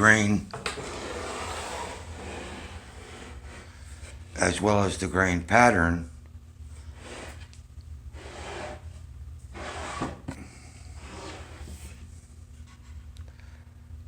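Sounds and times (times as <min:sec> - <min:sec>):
wood scraping on wood: 0:00.0 - 0:04.5, 0:06.7 - 0:13.1
steady low hum: 0:00.0 - 0:14.0.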